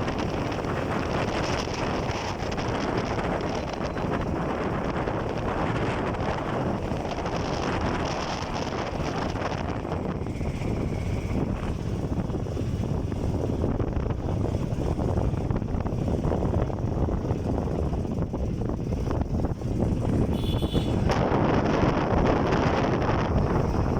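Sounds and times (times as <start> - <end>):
wind buffeting microphone: 0.0 - 23.9.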